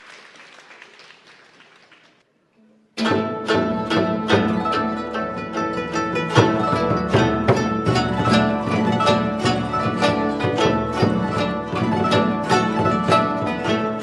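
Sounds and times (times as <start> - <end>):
zither ensemble plucking: 2.6 - 14.0.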